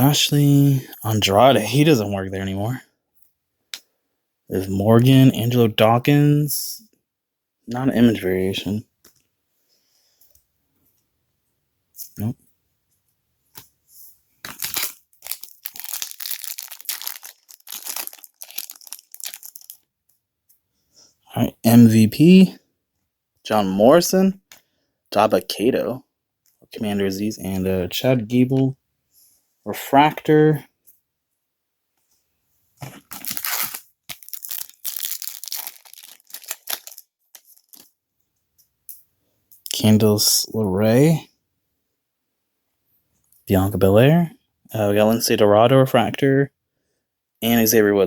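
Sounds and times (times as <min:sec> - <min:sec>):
foil wrapper crinkling: 0:14.4 - 0:19.9, 0:32.8 - 0:37.9.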